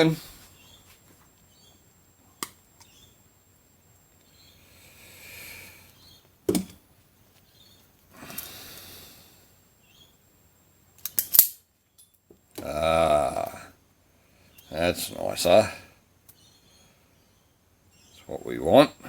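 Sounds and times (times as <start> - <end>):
wire cutter clicks: 11.0 - 11.6.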